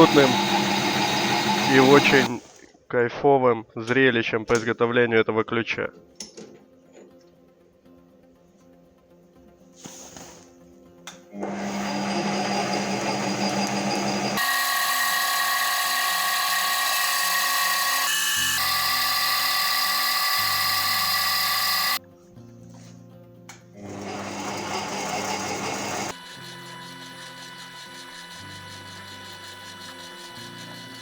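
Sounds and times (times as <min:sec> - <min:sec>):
high whine of machine: 0:00.0 - 0:02.4, 0:11.4 - 0:22.0, 0:23.8 - 0:31.0
machine tool cutting steel: 0:00.0 - 0:02.4, 0:11.4 - 0:22.0, 0:23.9 - 0:31.0
background music: 0:03.0 - 0:11.4, 0:18.4 - 0:31.0.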